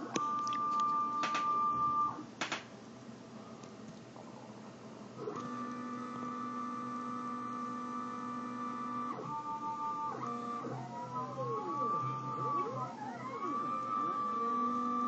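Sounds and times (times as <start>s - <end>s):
stepper motors whining: 5.3s - 15.0s.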